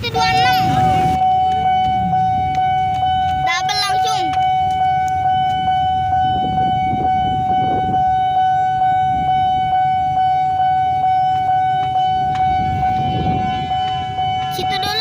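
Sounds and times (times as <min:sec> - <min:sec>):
level crossing bell ringing: 0:00.0 - 0:01.2
low rumble of traffic: 0:00.0 - 0:15.0.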